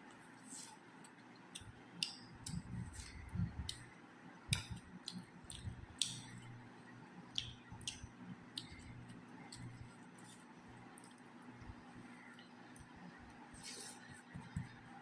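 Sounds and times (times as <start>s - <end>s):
wet chewing and mouth smacks: 4.5s - 6.5s, 7.2s - 11.3s.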